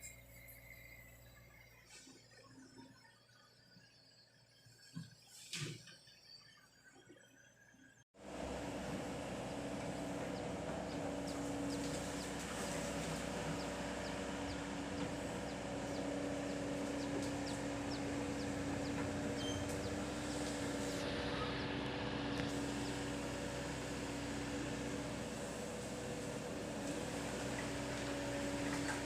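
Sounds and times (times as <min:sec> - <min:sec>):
excavator engine humming: 0:08.2 - 0:29.0.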